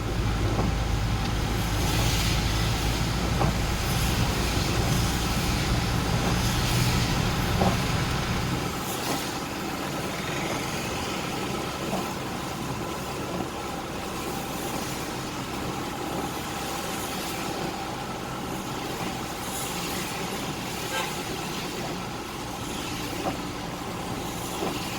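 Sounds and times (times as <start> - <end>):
passing traffic hiss: 0.0 - 13.1
vehicle engine rumbling: 0.0 - 24.9.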